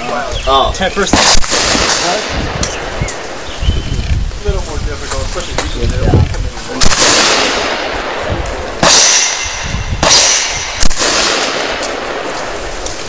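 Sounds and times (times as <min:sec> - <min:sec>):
rifle shots with echo: 0:01.1 - 0:03.4, 0:06.8 - 0:12.9.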